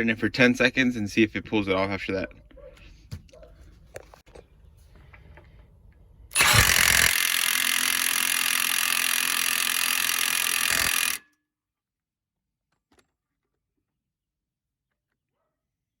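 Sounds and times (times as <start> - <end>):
impact wrench hammering bolt: 6.4 - 11.2.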